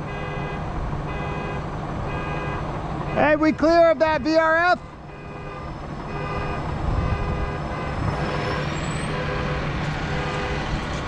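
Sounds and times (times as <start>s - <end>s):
crane diesel engine running: 0.0s - 11.0s
warning beeper: 2.1s - 3.6s.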